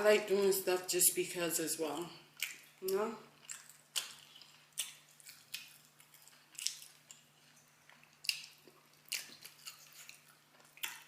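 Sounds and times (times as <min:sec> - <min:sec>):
close-miked chewing: 0:02.3 - 0:11.0
wet mouth and lip smacks: 0:02.4 - 0:02.8, 0:03.4 - 0:07.3, 0:07.9 - 0:11.0.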